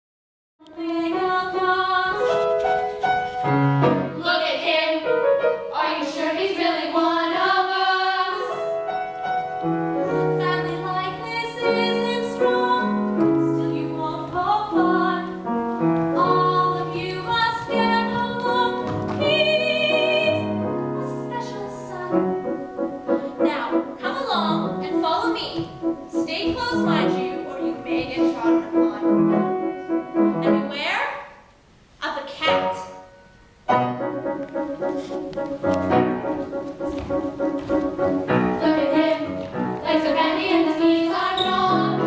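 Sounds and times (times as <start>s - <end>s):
women singing: 0.7s - 2.4s, 4.1s - 8.7s, 10.4s - 15.4s, 16.2s - 22.3s, 38.6s - 42.0s
instrumental accompaniment: 8.4s - 30.7s, 32.5s - 42.0s.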